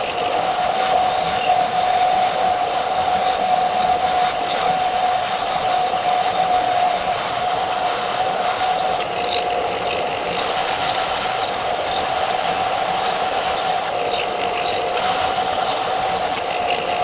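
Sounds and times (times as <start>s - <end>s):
high hiss: 0.0s - 9.1s, 10.4s - 14.0s, 15.0s - 16.5s
power tool whining: 0.0s - 17.0s.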